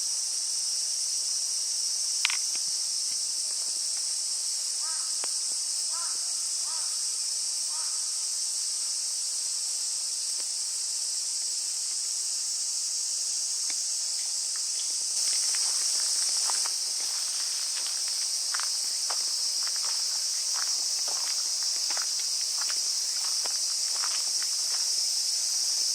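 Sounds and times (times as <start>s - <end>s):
high-pitched insect chorus: 0.0s - 25.9s
crow cawing: 4.8s - 5.1s, 5.9s - 7.0s, 7.7s - 8.1s
footsteps on a path: 14.6s - 25.9s.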